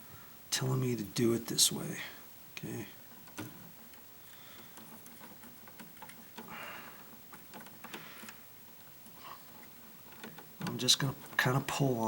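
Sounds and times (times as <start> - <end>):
wires clicking and rustling: 1.6 - 12.0.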